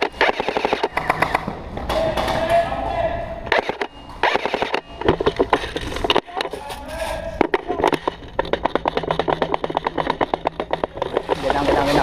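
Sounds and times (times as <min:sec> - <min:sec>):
airsoft guns firing: 0:00.0 - 0:02.6, 0:03.5 - 0:05.4.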